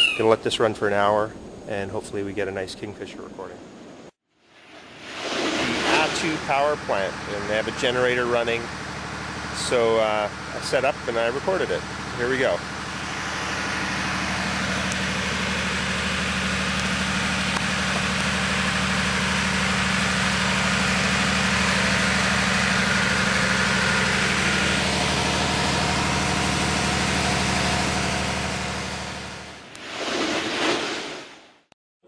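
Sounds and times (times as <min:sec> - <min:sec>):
generator humming and whirring: 0:05.8 - 0:29.6.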